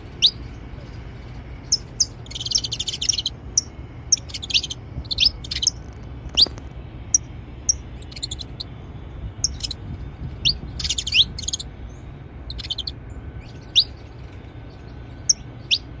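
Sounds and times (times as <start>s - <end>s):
finches chirping: 0.0s - 16.0s
low background rumble: 0.0s - 16.0s.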